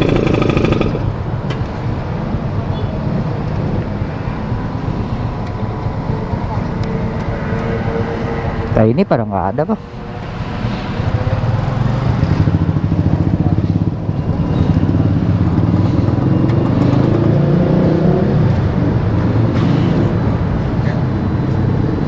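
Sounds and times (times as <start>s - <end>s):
motor scooter engine running: 0.0s - 1.2s.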